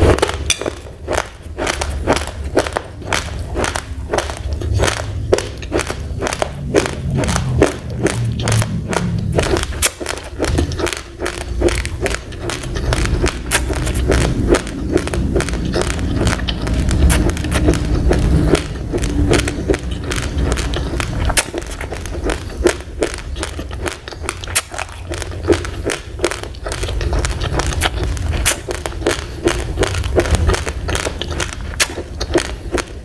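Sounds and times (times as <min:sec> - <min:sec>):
chewing dry rice crunching: 0:00.0 - 0:33.0
low rumble: 0:00.0 - 0:33.0.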